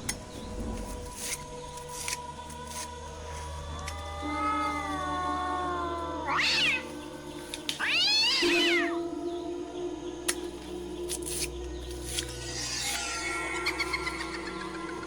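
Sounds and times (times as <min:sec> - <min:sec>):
meow-like animal cries: 0:04.0 - 0:06.9, 0:07.8 - 0:09.0.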